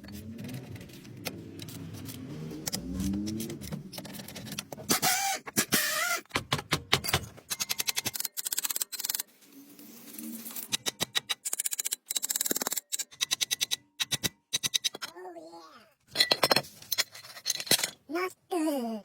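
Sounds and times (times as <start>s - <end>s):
tool scraping and grinding metal: 16.1s - 18.0s.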